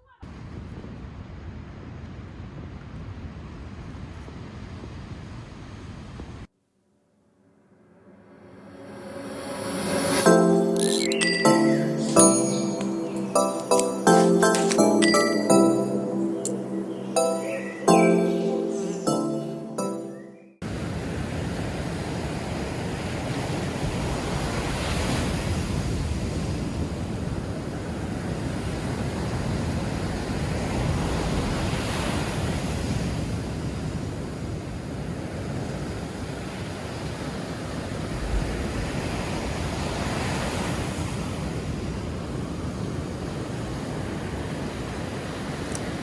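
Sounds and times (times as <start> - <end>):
sea waves breaking on beach: 20.7 - 46.0.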